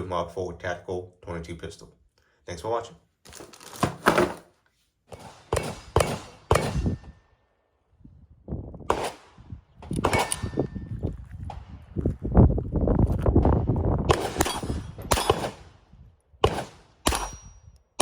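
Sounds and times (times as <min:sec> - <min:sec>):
pistol shots: 0:05.1 - 0:07.1, 0:08.9 - 0:09.4, 0:10.0 - 0:10.8, 0:14.1 - 0:15.8, 0:16.4 - 0:17.5.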